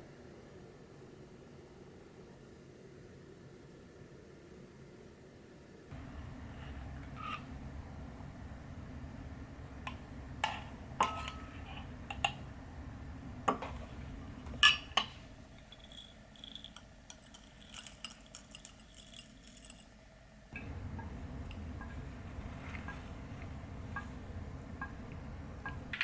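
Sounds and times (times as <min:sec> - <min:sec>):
small hard objects clinking: 0:15.6 - 0:20.0.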